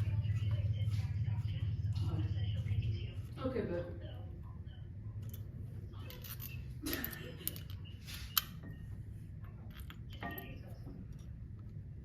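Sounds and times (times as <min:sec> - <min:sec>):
low steady hum: 0:00.0 - 0:12.0
metal tools clinking: 0:05.2 - 0:08.7, 0:09.5 - 0:11.4.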